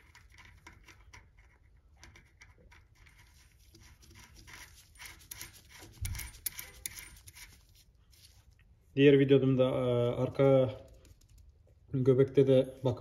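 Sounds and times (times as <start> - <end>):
small metal parts clicking and scraping: 0.0 - 7.8.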